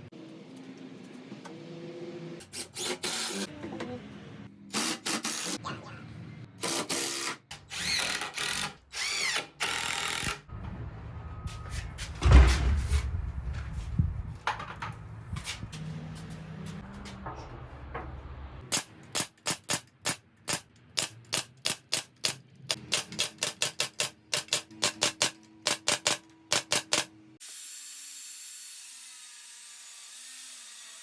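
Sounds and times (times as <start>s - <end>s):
workshop tool clicking: 18.7s - 27.1s.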